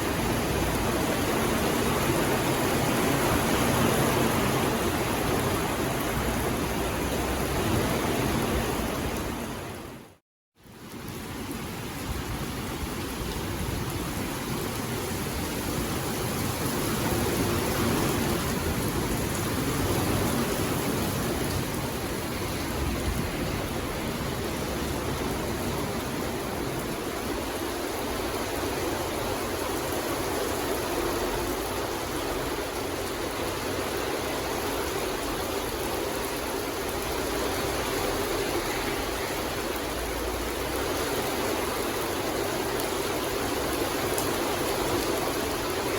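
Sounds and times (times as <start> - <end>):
steady rain: 0.0 - 45.9.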